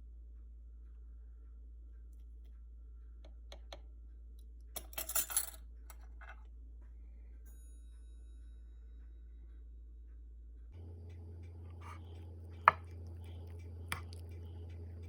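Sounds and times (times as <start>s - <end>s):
steady low hum: 8.4s - 15.0s.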